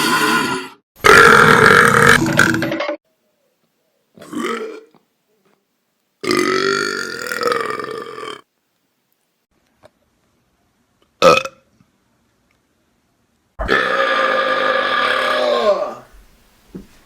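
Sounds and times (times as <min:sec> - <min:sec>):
person burping: 0:00.0 - 0:03.0, 0:04.2 - 0:05.0, 0:06.2 - 0:08.4, 0:11.2 - 0:11.6, 0:13.6 - 0:16.1.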